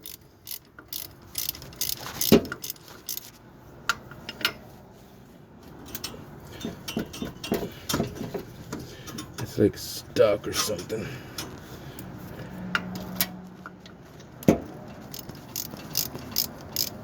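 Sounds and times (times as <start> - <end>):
wrench metallic clicks: 0.0 - 3.3, 15.1 - 17.0.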